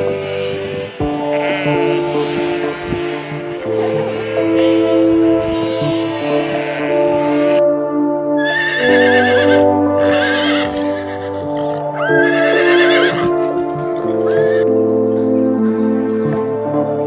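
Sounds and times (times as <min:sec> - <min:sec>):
background music: 0:00.0 - 0:17.0
horse whinnying: 0:08.4 - 0:13.4.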